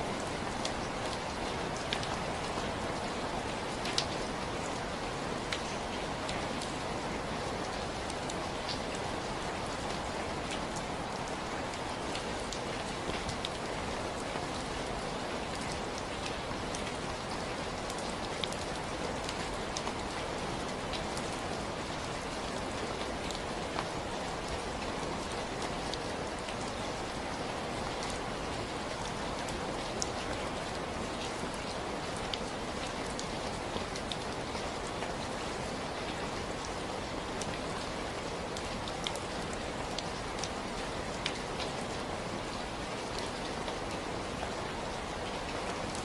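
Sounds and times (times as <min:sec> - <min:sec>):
raindrops ticking on a surface: 0:00.0 - 0:46.0
steady rainfall: 0:00.0 - 0:46.0.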